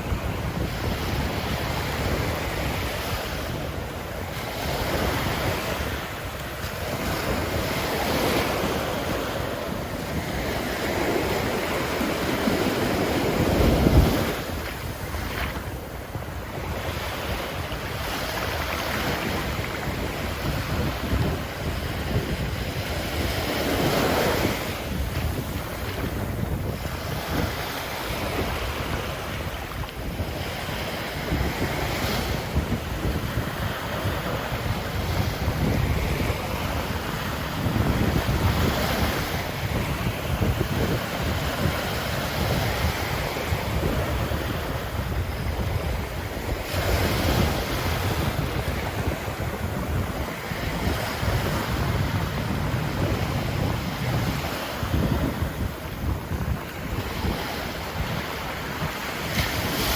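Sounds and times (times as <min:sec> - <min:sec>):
ocean surf breaking: 0:00.0 - 0:59.9
wind rumble on microphone: 0:00.0 - 0:59.9.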